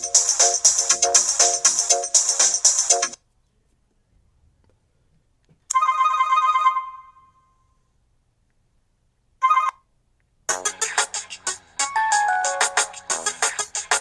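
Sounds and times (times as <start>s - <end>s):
chime ringtone: 11.8s - 13.2s.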